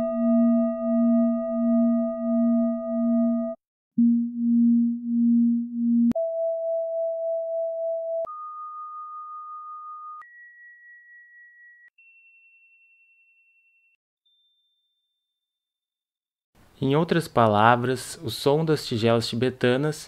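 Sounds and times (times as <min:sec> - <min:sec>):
singing bowl ringing: 0:00.0 - 0:03.6, 0:08.3 - 0:15.2.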